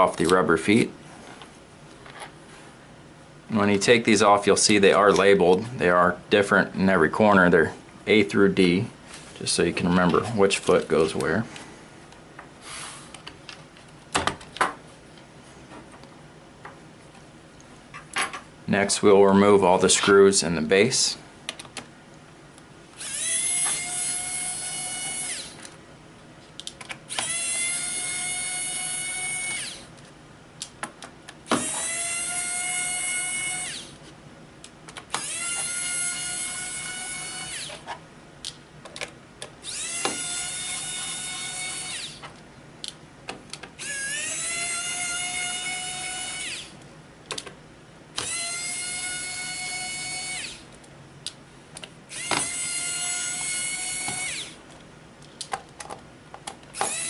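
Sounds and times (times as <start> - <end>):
electric screwdriver motor whine: 23.0 - 25.6, 27.1 - 29.9, 31.5 - 33.9, 35.1 - 37.8, 39.6 - 42.2, 43.8 - 46.7, 48.2 - 50.6, 52.1 - 54.6, 56.7 - 57.0.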